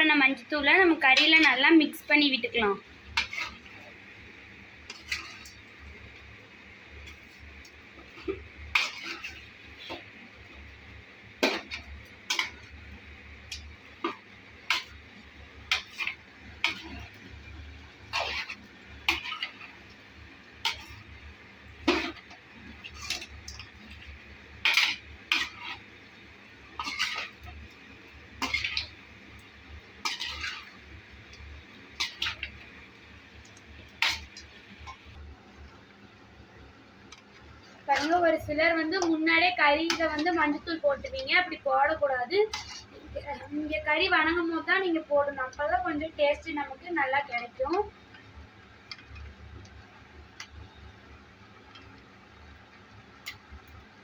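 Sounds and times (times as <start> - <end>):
spoon scraping a cooking pot: 3.0 - 4.0, 4.8 - 5.7, 7.0 - 10.1, 11.4 - 12.8, 15.7 - 17.3, 18.0 - 19.8, 20.6 - 21.2, 21.8 - 26.0, 26.7 - 29.0, 29.9 - 32.7, 33.9 - 34.5, 37.9 - 39.2, 39.8 - 41.2, 42.4 - 43.3.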